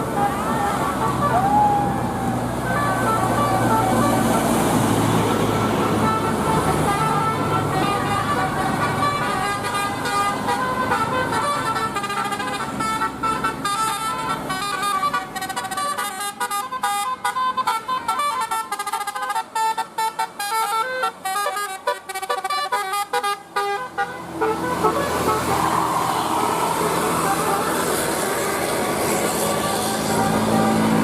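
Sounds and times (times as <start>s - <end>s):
loud steady rushing noise: 0.0s - 14.2s, 24.2s - 31.0s
musical air horn playing a tune: 2.6s - 31.0s.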